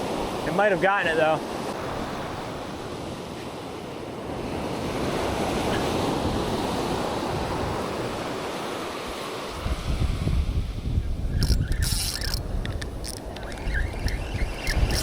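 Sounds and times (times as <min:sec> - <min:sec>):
waves breaking on beach: 0:00.0 - 0:15.0
wind buffeting microphone: 0:04.1 - 0:08.5, 0:09.5 - 0:15.0.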